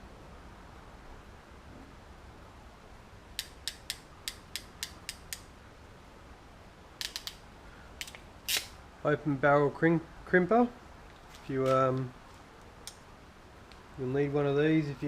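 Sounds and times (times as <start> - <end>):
ratcheting crimper clicking: 3.4 - 5.5, 7.0 - 7.4, 8.0 - 8.8.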